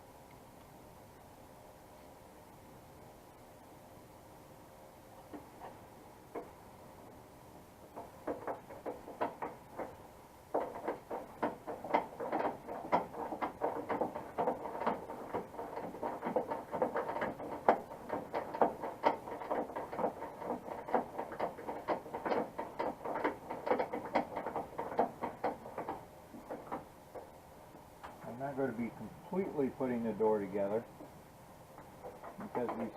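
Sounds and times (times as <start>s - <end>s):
hand tools clicking and rattling: 7.9s - 27.3s, 31.8s - 32.9s.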